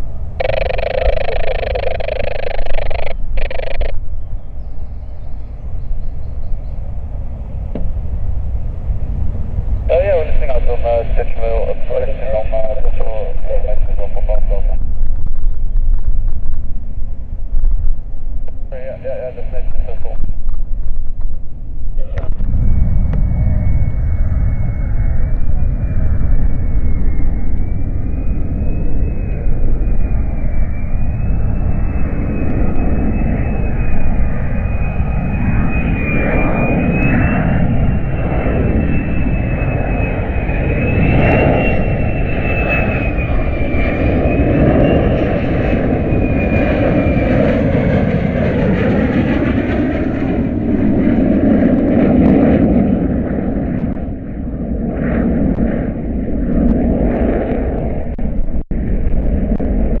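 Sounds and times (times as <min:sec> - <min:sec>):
faint high whine: 0:00.0 - 0:08.0, 0:08.7 - 0:15.7, 0:18.1 - 0:20.5, 0:21.4 - 0:48.0
jet engine rumbling overhead: 0:00.0 - 1:00.0.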